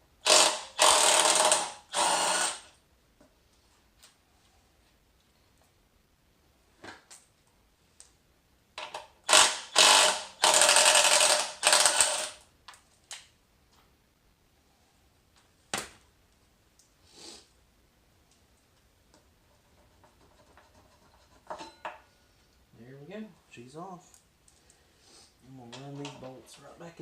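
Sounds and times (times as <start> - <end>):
impact tool rattling: 8.8 - 12.4.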